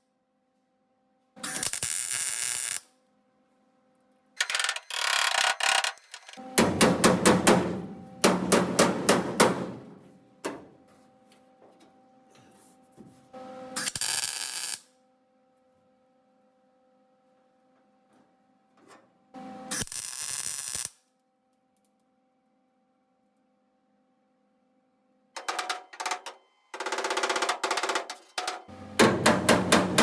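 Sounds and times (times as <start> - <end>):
welding crackling hiss: 1.5 - 2.8, 13.8 - 14.9, 19.7 - 21.0
hammer on sheet steel: 6.4 - 10.0, 27.5 - 30.0.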